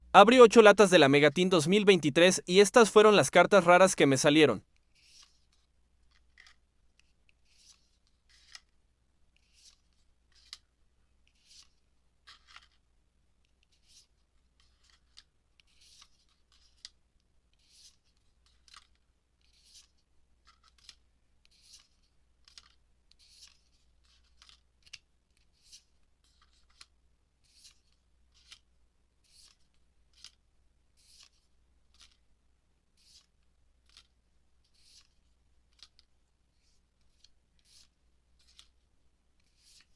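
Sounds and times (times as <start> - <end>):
trading cards swishing: 5.0 - 5.5, 33.0 - 33.3, 34.7 - 35.2, 36.6 - 38.7, 39.4 - 39.9.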